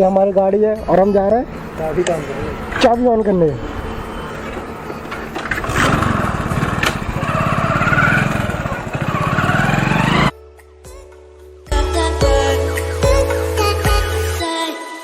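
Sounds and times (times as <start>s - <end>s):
motorcycle engine starting and revving: 0.8s - 10.3s.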